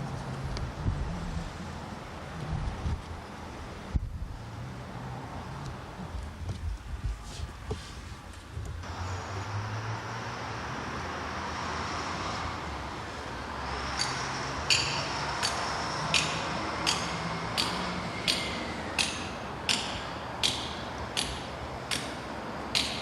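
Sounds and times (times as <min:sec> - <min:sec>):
background noise: 0:00.0 - 0:23.0
hammer blows on metal: 0:13.8 - 0:23.0.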